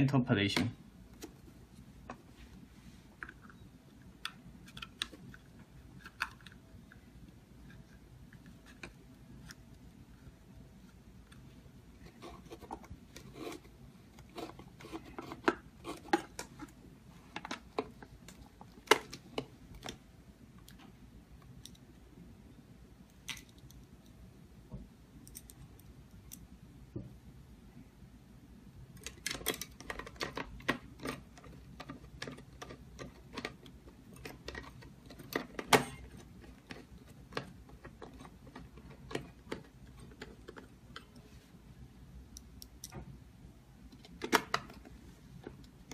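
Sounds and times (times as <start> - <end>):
door lock parts clicking and knocking: 29.0 - 41.0.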